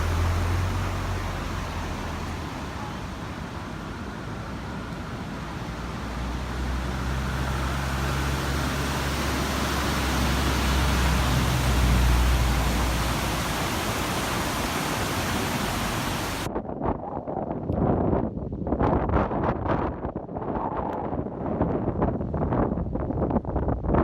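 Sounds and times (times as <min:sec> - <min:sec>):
steady rushing noise: 0:00.0 - 0:16.5
vehicle engine hum: 0:00.0 - 0:16.5.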